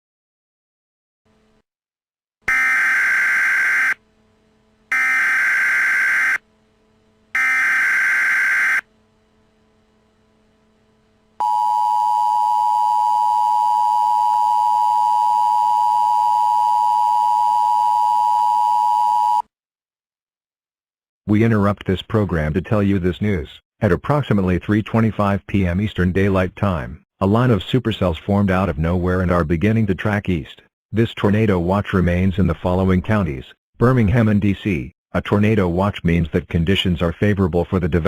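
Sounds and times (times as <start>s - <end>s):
two-tone attention signal: 11.4s - 19.4s.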